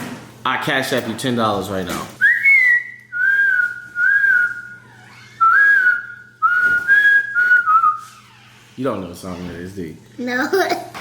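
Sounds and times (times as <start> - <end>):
man whistling a melody: 2.2 - 4.8, 5.4 - 8.0.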